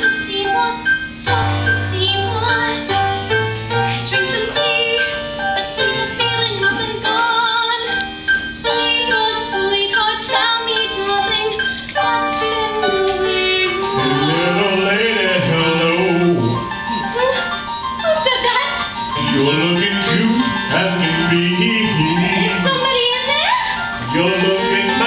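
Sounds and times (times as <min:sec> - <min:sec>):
young woman singing with vibrato: 0:00.0 - 0:03.0, 0:04.0 - 0:14.6, 0:22.3 - 0:23.8
keyboard accompaniment: 0:00.0 - 0:25.0.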